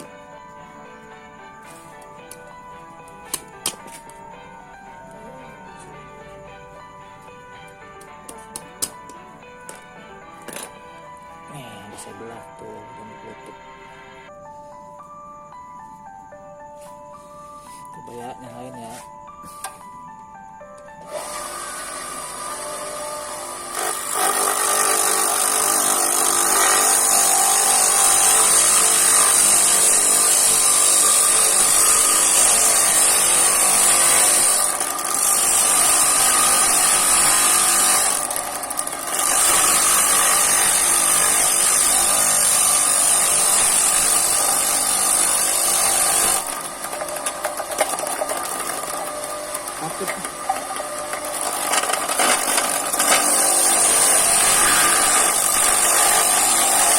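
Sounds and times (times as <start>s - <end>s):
electric motor humming: 21.0s - 56.9s.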